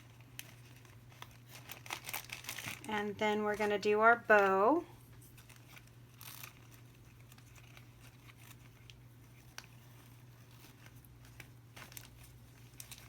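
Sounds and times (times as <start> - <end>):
ribbon and bag rustling: 0.0 - 13.0.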